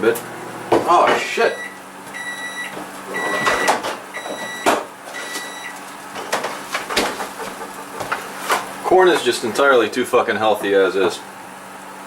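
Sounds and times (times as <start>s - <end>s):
kitchen clatter knocks: 6.2s - 9.4s.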